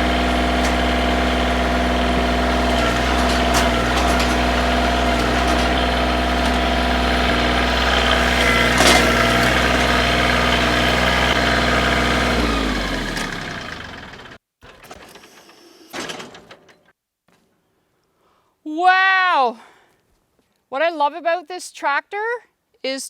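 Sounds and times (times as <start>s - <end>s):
tractor engine running and winding down: 0.0s - 16.5s.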